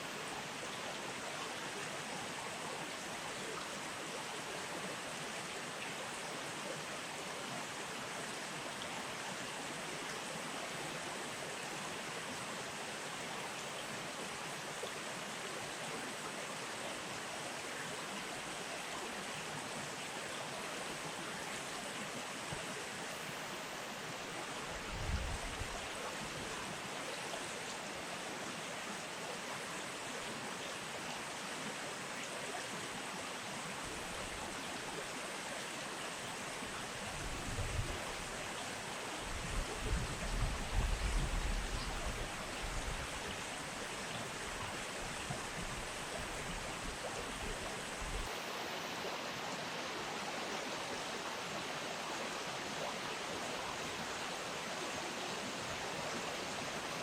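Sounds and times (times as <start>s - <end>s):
river water rushing: 18.2s - 57.0s.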